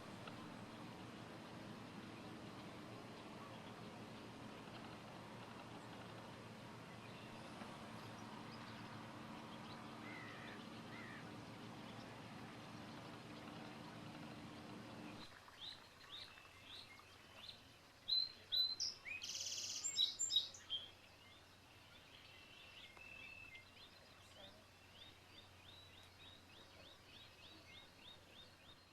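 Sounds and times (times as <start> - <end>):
songbirds chirping: 0.0 - 28.9.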